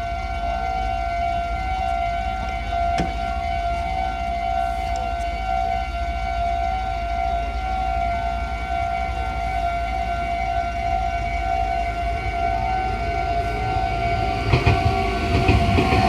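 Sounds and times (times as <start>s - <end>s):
level crossing warning alarm: 0.0s - 16.0s.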